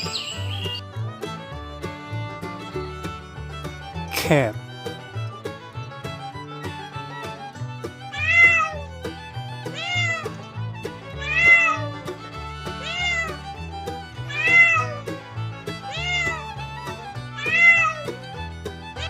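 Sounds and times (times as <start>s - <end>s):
background music: 0.0s - 19.0s
cat meowing: 8.1s - 8.9s, 9.8s - 10.3s, 11.2s - 11.9s, 12.8s - 13.4s, 14.3s - 15.1s, 15.8s - 16.6s, 17.4s - 18.1s.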